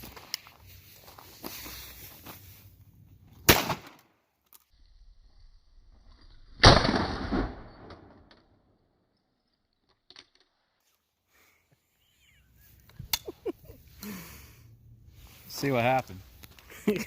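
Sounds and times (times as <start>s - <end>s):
shotgun shot: 3.5s - 4.0s, 6.6s - 8.1s.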